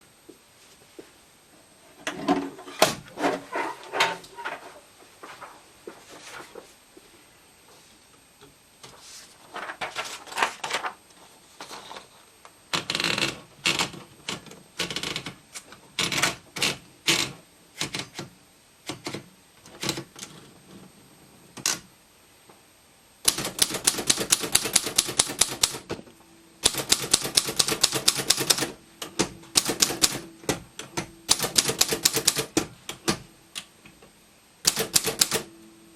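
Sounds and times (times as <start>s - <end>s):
manual typewriter typing: 12.7s - 15.4s, 16.0s - 20.3s, 23.3s - 25.9s, 26.6s - 33.2s, 34.6s - 35.5s.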